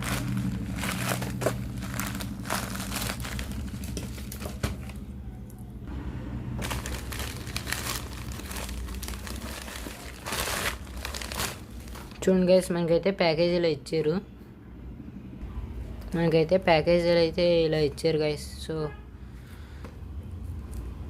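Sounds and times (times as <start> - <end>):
packaging crinkling and tearing: 0.0 - 5.0, 6.6 - 12.2.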